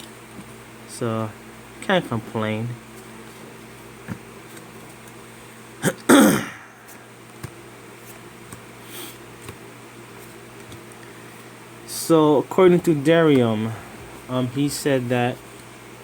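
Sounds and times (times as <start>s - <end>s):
low room hum: 0.0s - 16.0s
man clearing throat: 5.8s - 6.8s.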